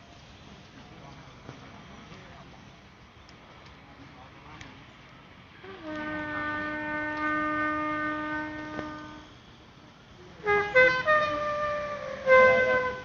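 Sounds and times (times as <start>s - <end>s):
bugle call: 5.7s - 9.3s, 10.4s - 13.0s.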